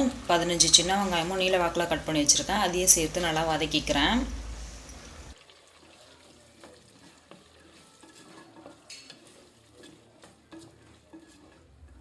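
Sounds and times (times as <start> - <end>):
onions frying in oil: 0.0 - 12.0
spoon scraping a clay pot: 6.6 - 12.0.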